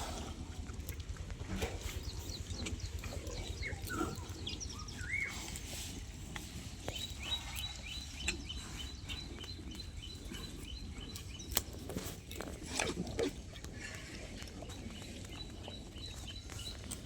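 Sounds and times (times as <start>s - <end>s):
pigs grunting: 1.4s - 6.2s, 12.1s - 17.0s.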